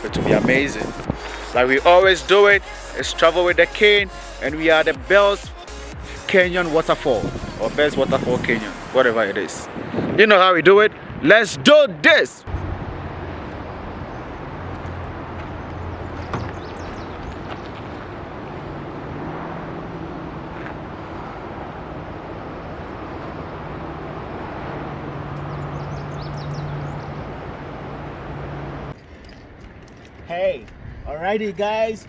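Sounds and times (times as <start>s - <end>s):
vehicle engine rumble: 12.5s - 32.0s.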